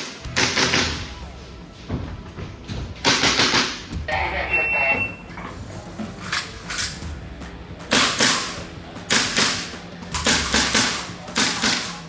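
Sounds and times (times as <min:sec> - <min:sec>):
airsoft pistol shots: 0:00.0 - 0:01.2, 0:07.9 - 0:12.0
faint high beep: 0:04.4 - 0:05.3.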